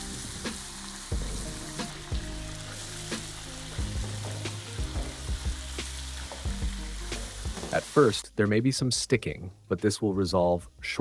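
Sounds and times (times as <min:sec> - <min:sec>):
meat sizzling in a pot: 0:00.0 - 0:08.3.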